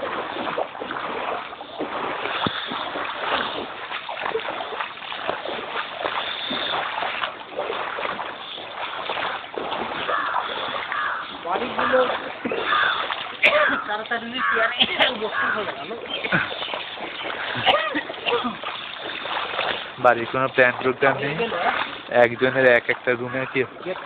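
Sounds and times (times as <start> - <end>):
water splashing and sloshing: 0.0 - 24.0.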